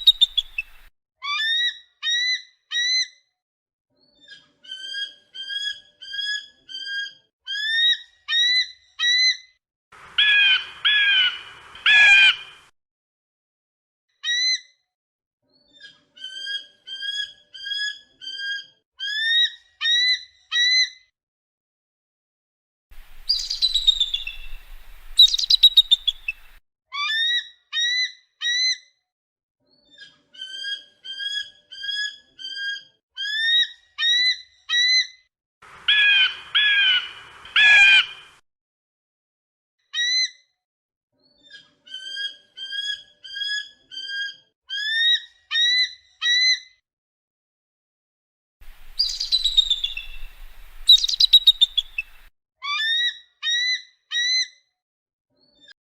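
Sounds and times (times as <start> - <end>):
eagle harsh calls: 0.0 - 0.9, 10.2 - 12.7, 23.0 - 26.6, 35.8 - 38.4, 48.6 - 52.3
eagle screechy calls: 0.0 - 0.9, 10.2 - 12.7, 23.0 - 26.6, 35.9 - 38.4, 48.6 - 53.0
eagle whistled chirps: 0.0 - 0.9, 23.2 - 26.6, 48.9 - 52.3.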